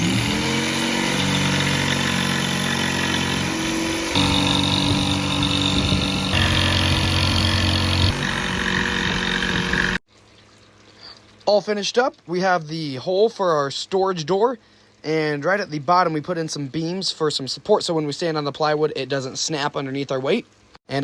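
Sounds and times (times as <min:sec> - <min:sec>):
power tool cutting plywood: 0:00.0 - 0:10.0.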